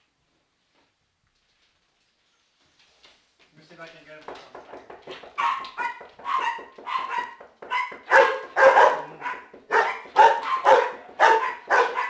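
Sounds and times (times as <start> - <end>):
small dogs barking: 5.4 - 12.0.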